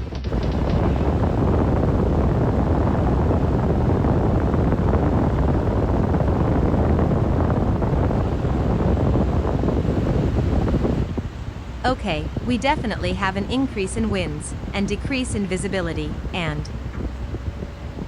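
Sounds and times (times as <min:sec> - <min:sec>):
strong blizzard wind: 0:00.0 - 0:18.0.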